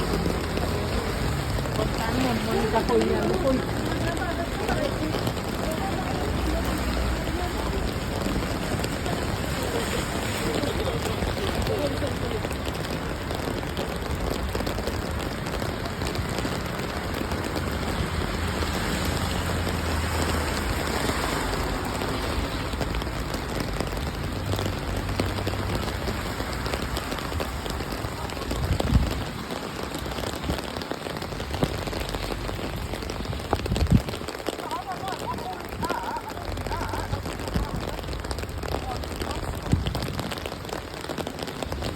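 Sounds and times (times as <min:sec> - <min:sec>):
rain on hard surfaces: 0:00.0 - 0:41.9.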